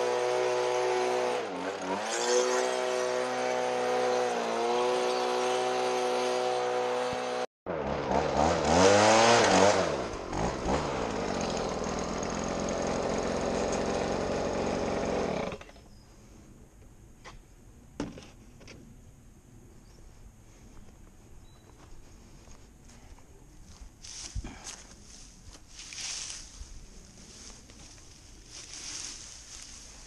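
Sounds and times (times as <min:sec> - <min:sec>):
small gasoline engine revving: 0:00.0 - 0:15.7.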